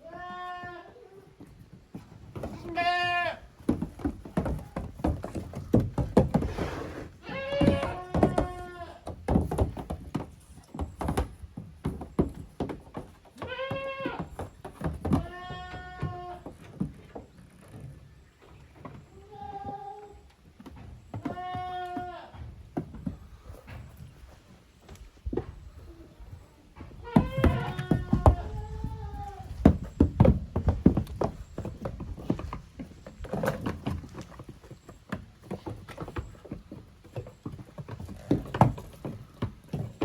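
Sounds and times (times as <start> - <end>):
goat kids bleating: 0.0 - 1.4, 2.4 - 3.6, 7.2 - 9.1, 13.3 - 14.5, 15.1 - 16.6, 19.1 - 20.3, 21.1 - 22.5, 26.8 - 29.7.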